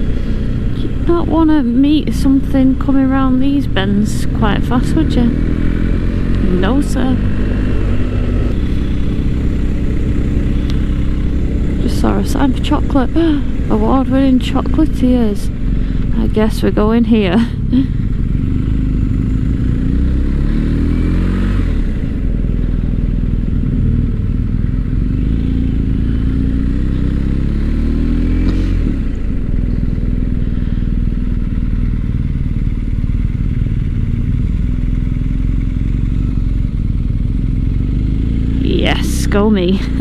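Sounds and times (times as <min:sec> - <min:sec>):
motorcycle engine running: 0:00.0 - 0:40.0
road noise: 0:00.0 - 0:40.0
wind noise: 0:02.8 - 0:14.9.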